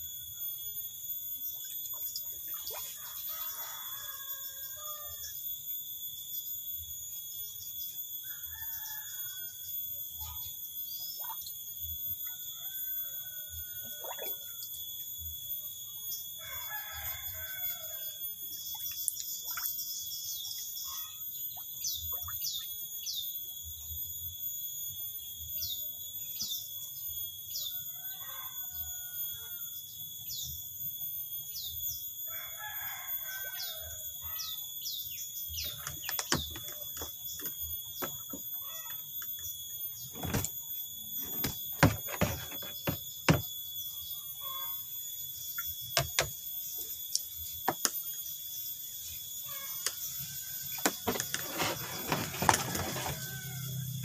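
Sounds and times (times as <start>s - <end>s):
steady high-pitched whine: 0.0s - 54.0s
bird crowing calls: 40.2s - 40.6s.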